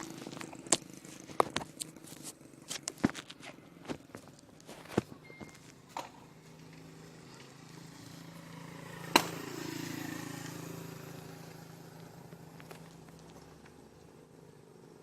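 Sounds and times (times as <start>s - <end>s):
road vehicle passing by: 5.7s - 15.0s.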